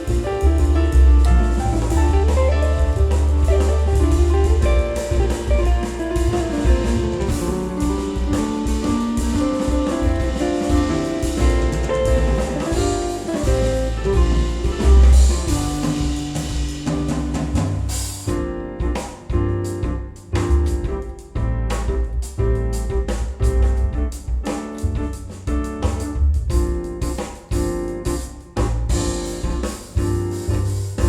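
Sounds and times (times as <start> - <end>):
strong bass line: 0.0 - 17.9
band music with guitar and drums: 1.0 - 17.2.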